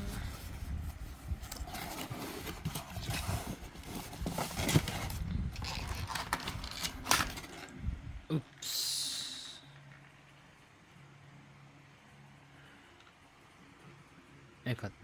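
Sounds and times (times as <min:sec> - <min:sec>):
cardboard box rustling and crackling: 0:00.0 - 0:07.7.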